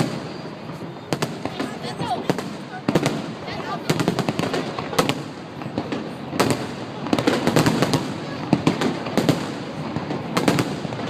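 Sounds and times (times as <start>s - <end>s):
fireworks bangs and crackling: 0.0s - 11.0s.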